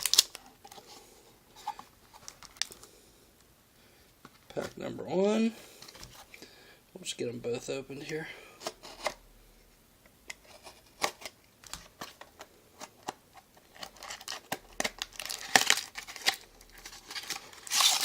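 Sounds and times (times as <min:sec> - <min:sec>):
wrapper tearing and crinkling: 0:00.0 - 0:00.6, 0:13.7 - 0:18.0.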